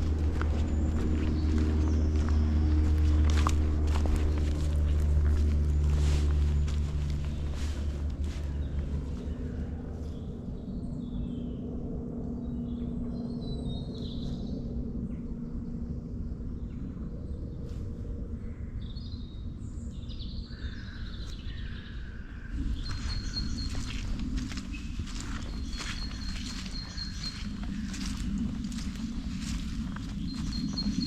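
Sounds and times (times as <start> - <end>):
footsteps on path: 0.0 - 10.2, 22.5 - 31.0
birds singing: 0.0 - 31.0
low outdoor rumble: 0.0 - 31.0.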